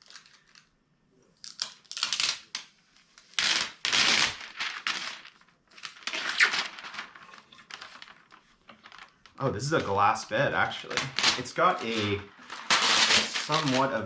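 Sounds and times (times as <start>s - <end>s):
packing foam rustling and scraping: 10.7s - 14.0s.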